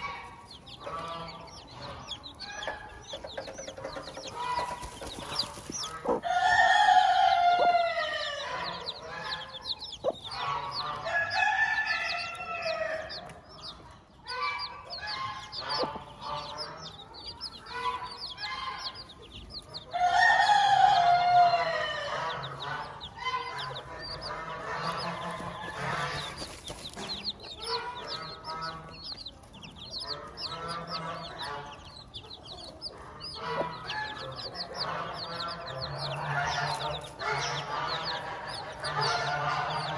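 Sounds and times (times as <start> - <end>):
chicks peeping: 0.0 - 39.9
hens clucking: 0.0 - 39.9
rooster crowing: 6.2 - 9.0, 11.0 - 13.1, 19.9 - 22.4.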